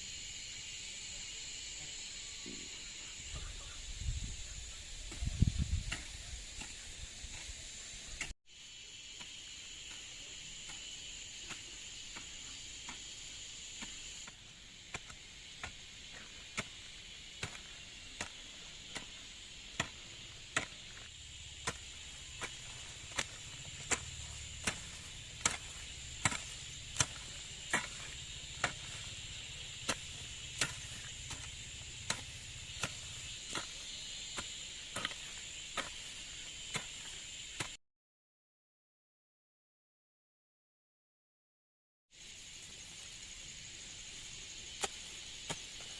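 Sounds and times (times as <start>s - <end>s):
insects chirring: 0.0s - 37.8s, 42.1s - 45.9s
hand tool chopping: 17.4s - 37.8s.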